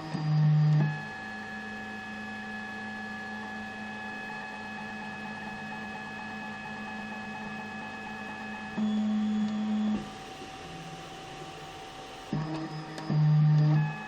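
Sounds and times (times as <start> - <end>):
printer motors whining: 0.0 - 14.0.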